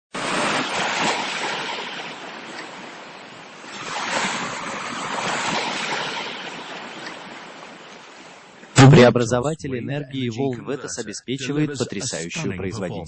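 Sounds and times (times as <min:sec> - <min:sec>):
ocean waves surging: 0:00.1 - 0:09.6.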